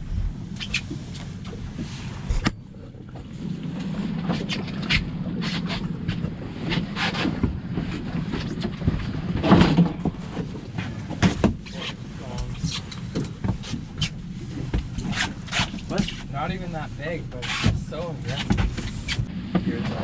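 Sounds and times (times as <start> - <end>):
wind on microphone: 0.0 - 2.6
boat motor humming: 0.0 - 19.6.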